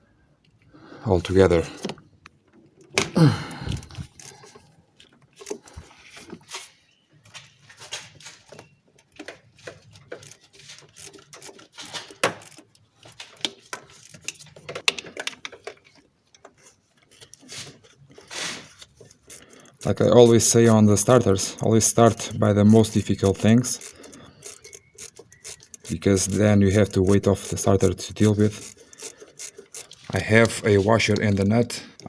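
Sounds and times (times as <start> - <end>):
hand tools tapping on metal: 19.0 - 32.0.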